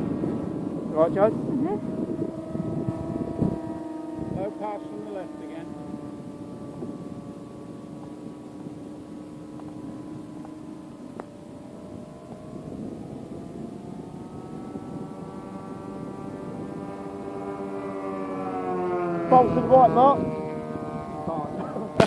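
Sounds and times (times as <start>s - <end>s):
model plane motor drone: 0.0s - 22.0s.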